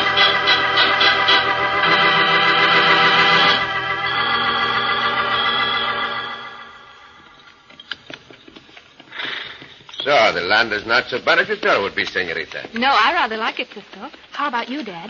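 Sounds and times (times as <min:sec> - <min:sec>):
sustained organ chords: 0:00.0 - 0:08.0.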